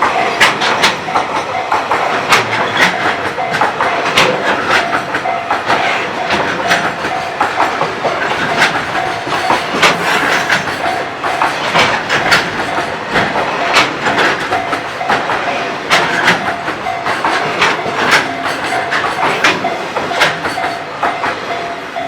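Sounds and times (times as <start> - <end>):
train rumble: 0.0 - 22.0
train wheels clacking on rails: 0.0 - 22.0
level crossing bell ringing: 16.4 - 20.0.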